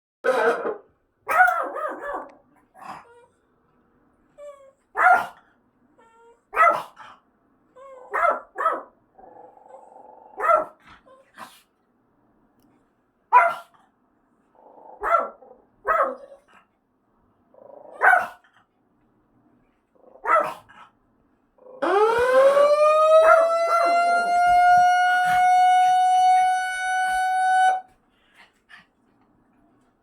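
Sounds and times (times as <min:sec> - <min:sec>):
dog barking: 0:00.3 - 0:02.4, 0:04.9 - 0:05.4, 0:06.5 - 0:07.0, 0:08.1 - 0:09.0, 0:10.3 - 0:10.8, 0:13.3 - 0:13.8, 0:15.0 - 0:16.4, 0:17.9 - 0:18.4, 0:20.1 - 0:20.7, 0:23.2 - 0:24.4.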